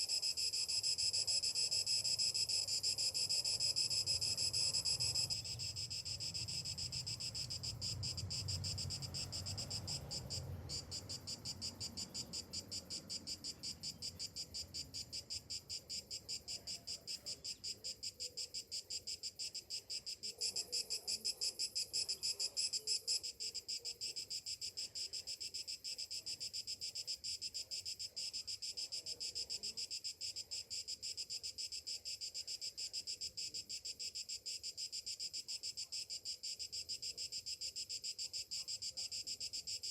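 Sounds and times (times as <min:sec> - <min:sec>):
cicadas singing: 0:00.6 - 0:19.0.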